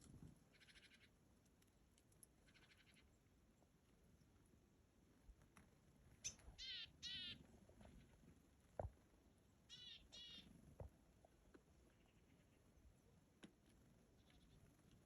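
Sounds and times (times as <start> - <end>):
bird giving harsh wavering calls: 6.2 - 7.4, 9.7 - 10.5.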